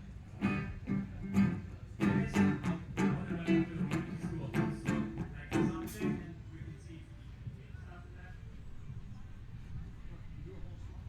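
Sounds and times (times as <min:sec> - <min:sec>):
guitar strumming chords: 0:00.4 - 0:06.3.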